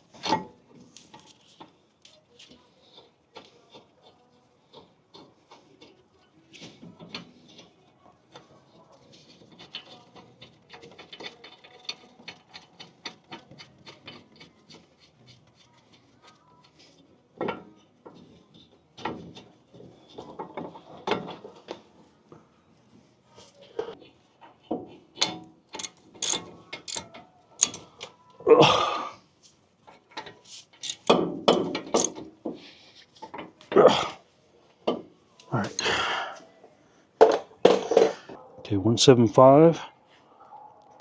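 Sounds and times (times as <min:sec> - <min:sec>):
metal clunks: 0:25.8 - 0:27.0
ratchet wrench clicking: 0:25.8 - 0:27.0, 0:27.6 - 0:27.8, 0:30.8 - 0:32.1.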